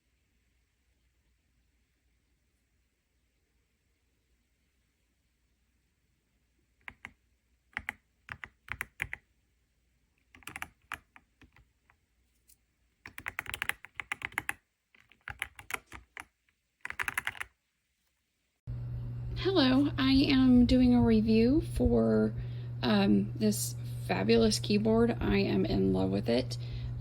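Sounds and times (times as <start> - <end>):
mechanical keyboard typing: 6.8 - 9.2, 10.2 - 12.0, 13.0 - 17.6.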